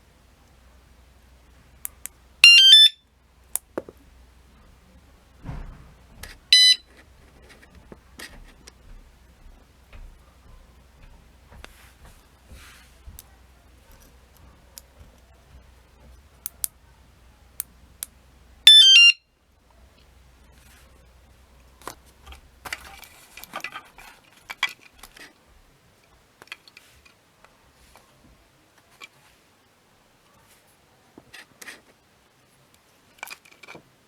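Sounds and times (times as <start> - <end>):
anti-theft alarm electronic tones: 2.4 - 3.0, 6.5 - 6.9, 18.7 - 19.2
rustling handling noise: 3.5 - 18.6, 19.7 - 29.5, 30.2 - 34.0.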